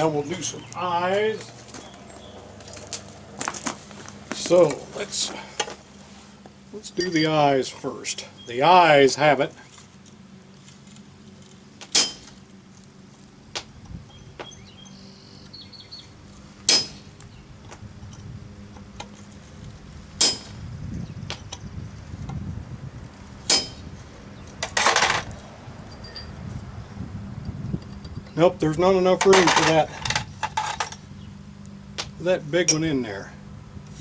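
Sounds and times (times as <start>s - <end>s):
steady low hum: 0.0s - 34.0s
hammer striking metal punch: 11.9s - 12.3s, 16.7s - 17.1s, 20.2s - 20.6s, 23.5s - 23.8s
metallic clatter: 24.6s - 25.3s, 29.2s - 31.0s.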